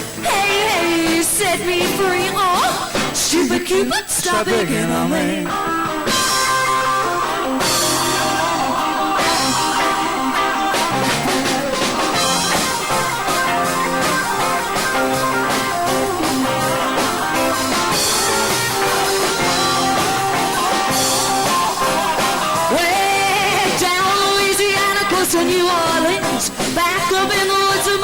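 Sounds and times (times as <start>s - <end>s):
live rock band playing: 0.0s - 28.0s.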